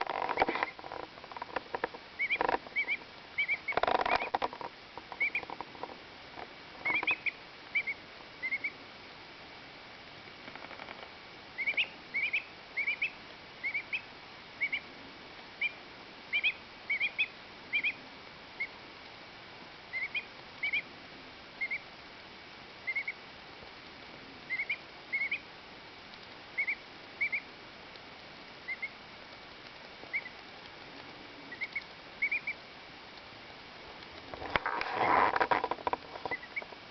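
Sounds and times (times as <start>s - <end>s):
duckling peeping: 0.2s - 5.6s, 6.8s - 8.8s, 11.6s - 14.9s, 15.6s - 18.0s, 18.6s - 18.8s, 19.9s - 20.9s, 21.6s - 21.9s, 22.8s - 23.2s, 24.5s - 25.4s, 26.6s - 27.5s, 28.6s - 29.0s, 30.1s - 30.4s, 31.5s - 32.6s, 34.5s - 36.8s
rustling bursts: 33.8s - 36.9s.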